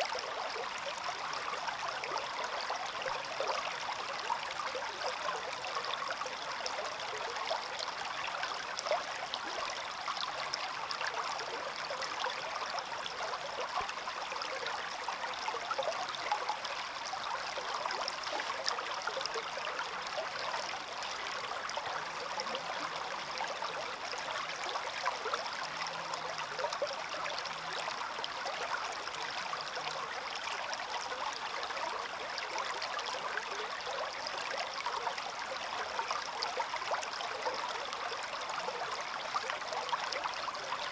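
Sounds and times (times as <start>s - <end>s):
stream water babbling: 0.0s - 40.9s.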